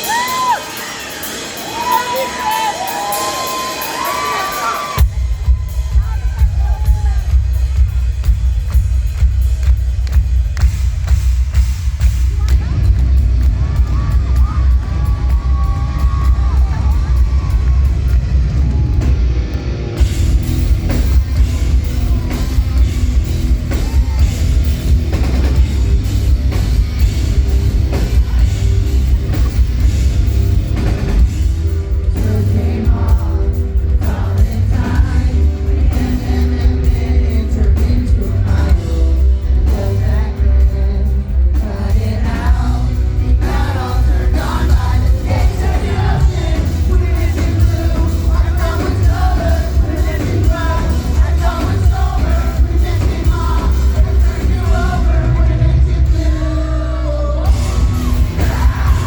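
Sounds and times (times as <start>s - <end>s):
rock band playing live: 0.0s - 59.0s
person singing: 31.8s - 59.0s.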